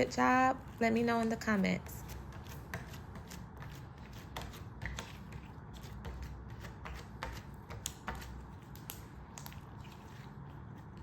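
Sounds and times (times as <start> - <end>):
hands squeezing slime: 8.6 - 11.0.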